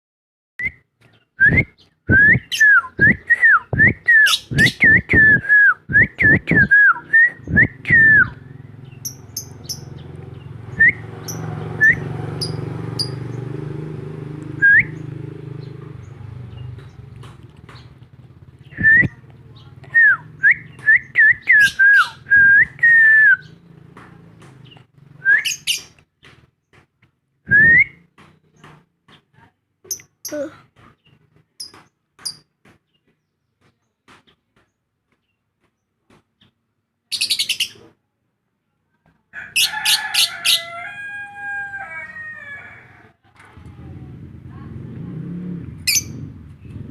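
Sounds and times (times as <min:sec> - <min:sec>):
low steady rumble: 0:03.0 - 0:13.2, 0:14.6 - 0:25.4, 0:43.5 - 0:46.9.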